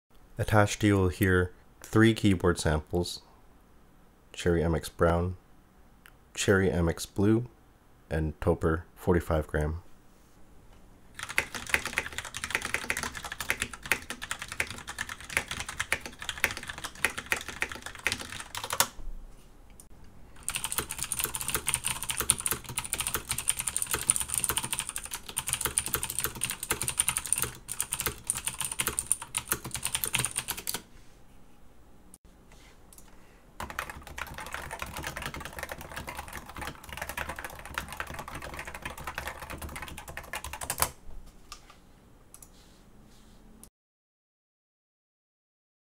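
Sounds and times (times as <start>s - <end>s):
typing on keyboards: 11.2s - 18.9s, 20.4s - 30.8s, 33.6s - 41.0s.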